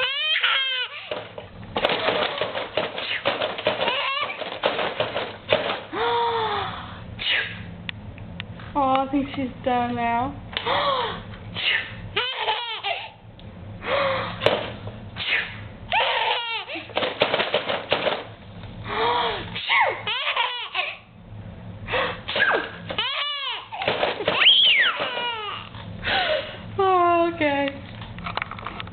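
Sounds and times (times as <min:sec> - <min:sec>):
baby giggling: 0:00.0 - 0:01.1, 0:03.8 - 0:04.4, 0:12.2 - 0:13.2, 0:15.9 - 0:16.9, 0:19.6 - 0:21.0, 0:22.4 - 0:25.7.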